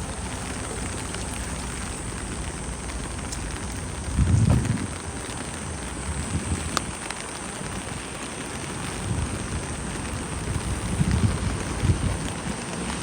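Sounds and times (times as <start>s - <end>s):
rain falling: 0.0s - 13.0s
low thud: 4.3s - 4.9s.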